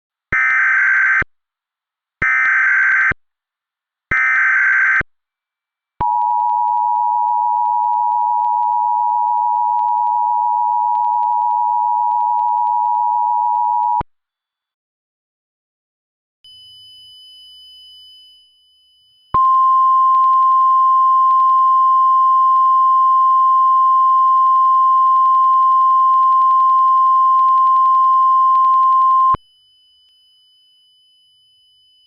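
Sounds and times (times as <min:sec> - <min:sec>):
two-tone attention signal: 0:19.4 - 0:29.4.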